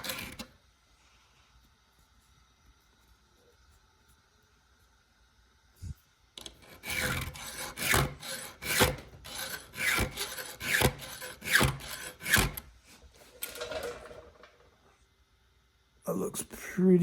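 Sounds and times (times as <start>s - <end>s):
file rasping on saw chain: 0.0s - 0.4s, 6.6s - 12.6s.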